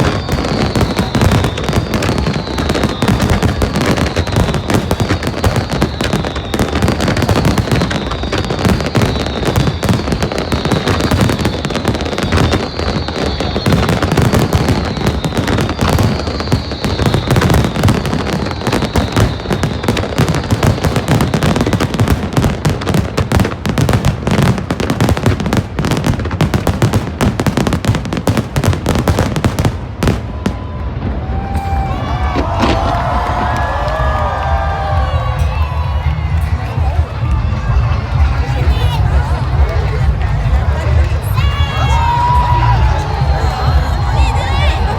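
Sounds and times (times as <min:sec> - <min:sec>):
falling firework whistles: 0:00.0 - 0:22.9
crowd cheering: 0:00.0 - 0:44.9
fireworks bangs and crackling: 0:00.0 - 0:44.9.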